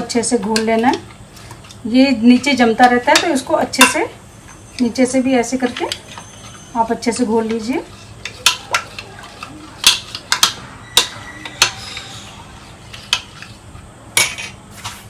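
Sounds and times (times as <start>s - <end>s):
spoon clinking against bowl: 2.6s - 13.4s.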